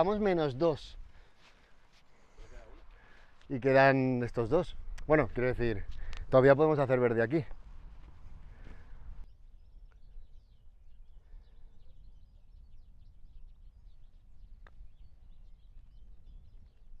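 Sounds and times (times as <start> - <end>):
birds chirping and twittering: 7.3 - 17.0.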